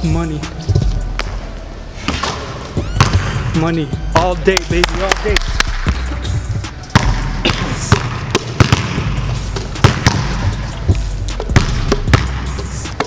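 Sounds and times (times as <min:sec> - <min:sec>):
hip-hop instrumental: 0:00.0 - 0:13.0
basketball bouncing on a court: 0:02.2 - 0:03.6, 0:06.9 - 0:13.0.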